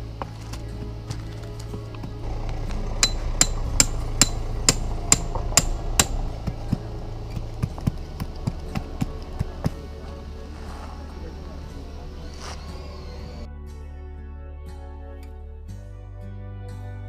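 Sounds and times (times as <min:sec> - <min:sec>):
hammer striking metal stake: 0:03.0 - 0:09.9.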